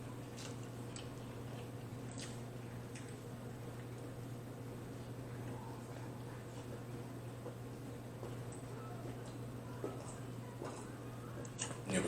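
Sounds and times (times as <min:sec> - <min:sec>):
steady low hum: 0:00.0 - 0:12.0
wet mouth clicks chewing: 0:00.4 - 0:03.3.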